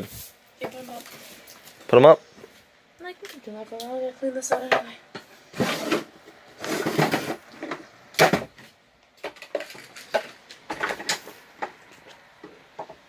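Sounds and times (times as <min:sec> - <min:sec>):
cage parts clattering and knocking: 0:06.7 - 0:13.0.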